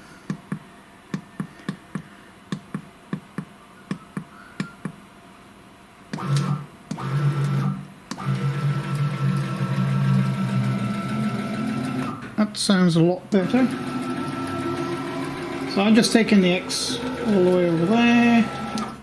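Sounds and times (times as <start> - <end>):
stepper motors whining: 6.2 - 12.3, 13.4 - 19.0.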